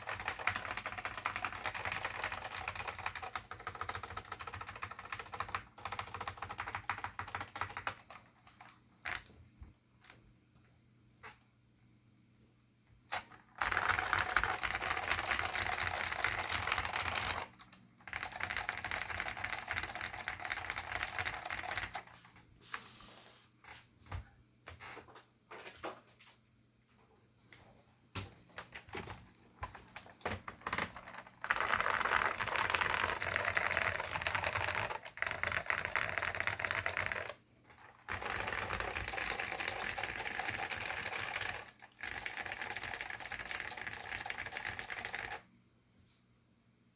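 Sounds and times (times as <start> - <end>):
mechanical keyboard typing: 0.0 - 9.3, 13.1 - 22.2, 28.7 - 45.5.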